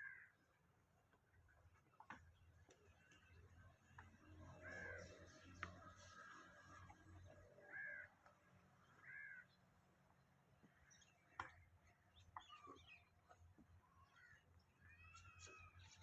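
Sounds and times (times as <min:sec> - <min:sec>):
bird calls: 0:10.6 - 0:16.0.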